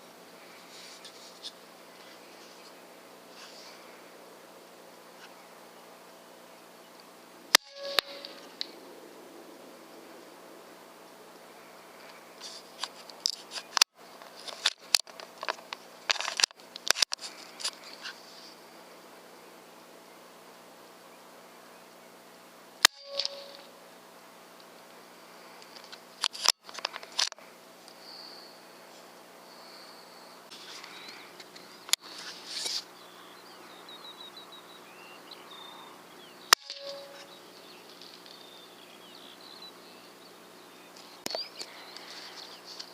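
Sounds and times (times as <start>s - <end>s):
small birds chirping: 0.2s - 8.8s, 27.8s - 42.9s
small sharp clicks and rattles: 25.6s - 28.0s.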